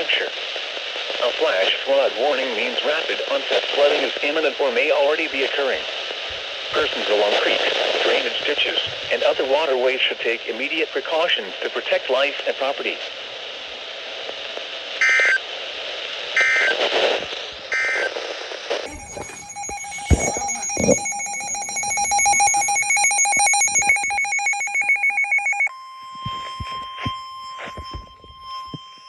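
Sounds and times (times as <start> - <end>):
static hiss: 0.0 - 24.4
data bursts: 18.9 - 29.0
pulsing ringing alert alarm: 18.9 - 29.0
steady warning tone: 18.9 - 29.0.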